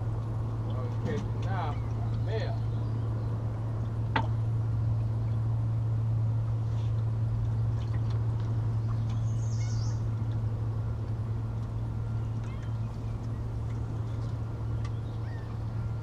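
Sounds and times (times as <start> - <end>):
steady low hum: 0.0 - 16.0
bird chirping: 8.8 - 10.2, 12.2 - 16.0.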